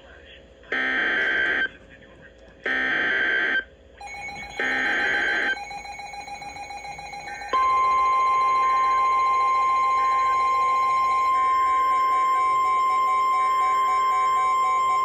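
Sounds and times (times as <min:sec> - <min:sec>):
digital header tones: 0:04.0 - 0:15.0
steady single-pitch alert tone: 0:04.0 - 0:15.0.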